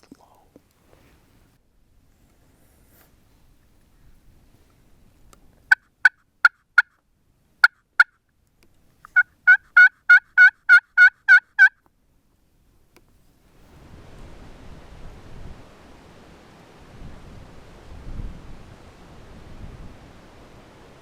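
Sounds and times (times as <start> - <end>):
turkey clucking: 9.1 - 11.8
turkey yelping: 9.1 - 11.8.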